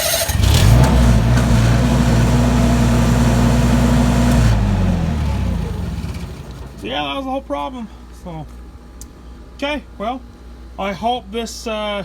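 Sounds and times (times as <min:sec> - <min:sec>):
generator engine running: 0:00.0 - 0:07.1.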